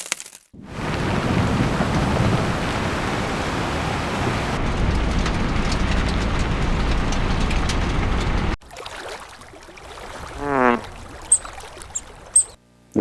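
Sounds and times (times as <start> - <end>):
rushing noise with low rumble: 0.6 - 8.6.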